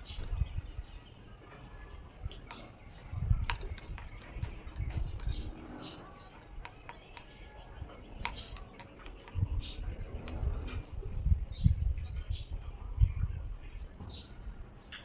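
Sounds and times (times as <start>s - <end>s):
small bird chirping: 0.0s - 12.6s
beak tapping on mirror: 6.2s - 9.5s.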